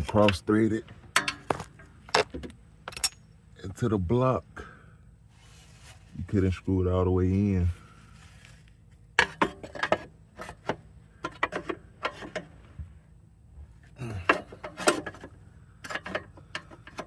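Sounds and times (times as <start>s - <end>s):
metal tools clinking and knocking: 1.1s - 3.4s.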